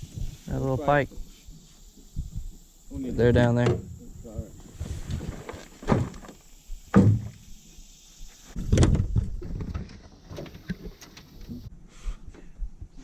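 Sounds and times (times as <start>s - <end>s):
bumps and thuds in a boat: 3.3s - 7.4s, 8.6s - 11.7s.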